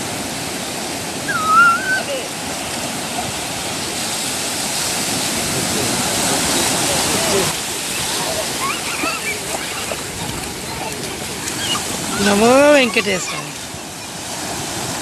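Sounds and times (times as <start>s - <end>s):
ocean surf breaking: 0.0s - 15.0s.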